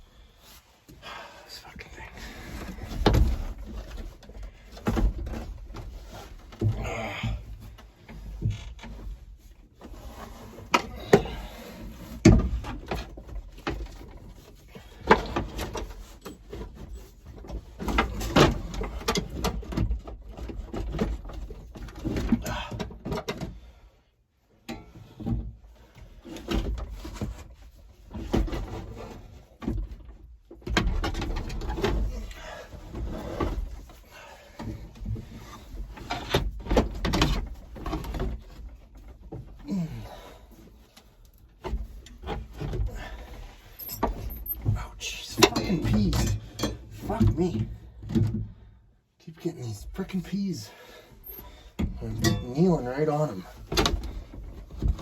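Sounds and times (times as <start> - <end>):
hard parts knocking and scraping: 28.1 - 48.7, 51.2 - 55.0.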